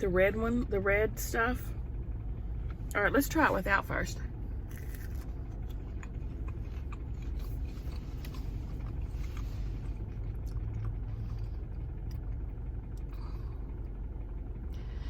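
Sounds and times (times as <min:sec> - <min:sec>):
air conditioning running: 0:00.0 - 0:15.0
car idling: 0:00.0 - 0:15.0
person chewing crunchy food: 0:04.6 - 0:13.5.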